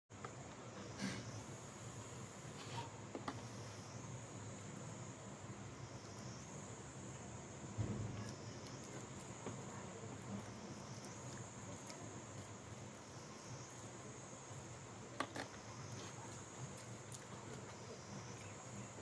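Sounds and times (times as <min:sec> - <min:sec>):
high-pitched hiss: 0:00.3 - 0:19.0
soft thump: 0:07.8 - 0:08.3.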